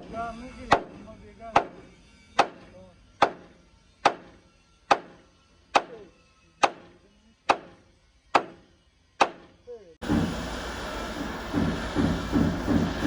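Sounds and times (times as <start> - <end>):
hammer blows on metal: 0.0 - 13.0.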